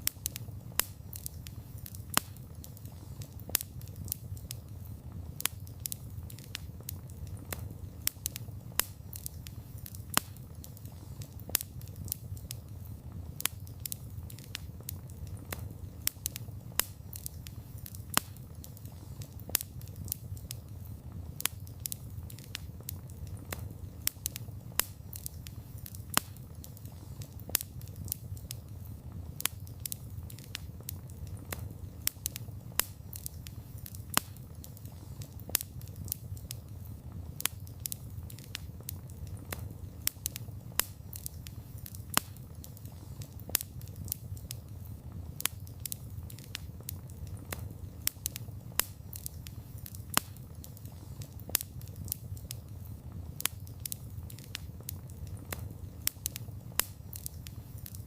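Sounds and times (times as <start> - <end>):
wood fire crackling and popping: 0.0 - 58.0.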